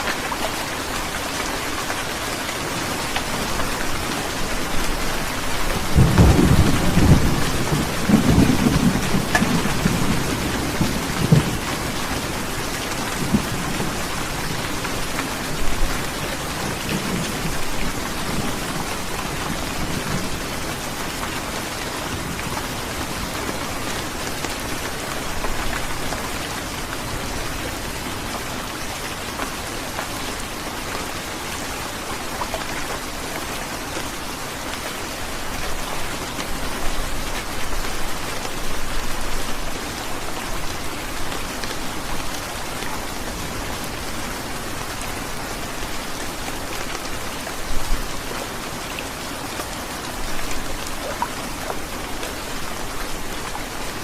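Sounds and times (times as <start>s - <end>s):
heavy rain falling: 0.0s - 54.0s
thunder rumbling: 5.9s - 11.7s.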